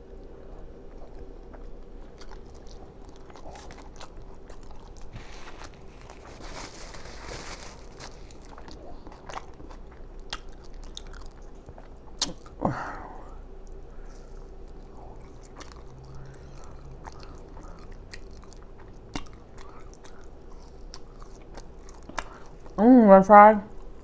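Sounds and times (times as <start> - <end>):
person chewing food: 0.0 - 22.8
wet mouth smacks and clicks: 12.2 - 12.5.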